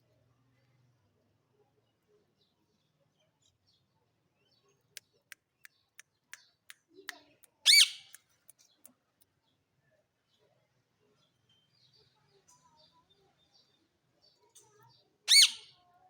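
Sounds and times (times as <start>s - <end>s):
parakeet clicking chirps: 7.5s - 8.6s
parakeet shrill squawk: 7.7s - 8.1s, 15.3s - 15.7s.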